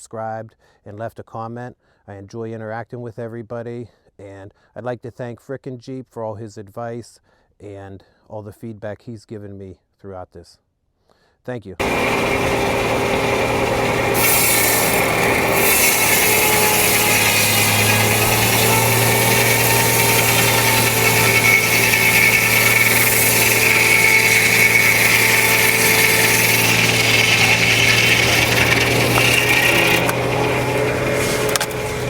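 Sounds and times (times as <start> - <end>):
circular saw cutting log: 11.8 - 32.0
steady running hum: 11.8 - 32.0.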